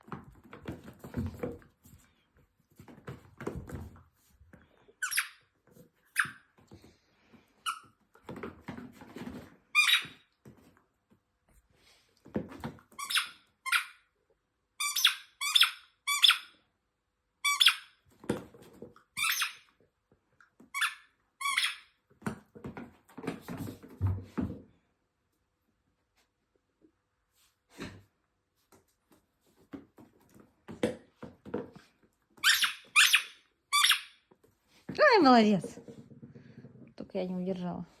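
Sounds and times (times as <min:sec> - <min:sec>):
squeaky dog toy squeaking: 0:05.0 - 0:05.4, 0:09.7 - 0:10.2, 0:13.0 - 0:14.0, 0:14.8 - 0:16.6, 0:17.4 - 0:17.9, 0:19.2 - 0:19.7, 0:20.7 - 0:21.9, 0:32.4 - 0:34.2.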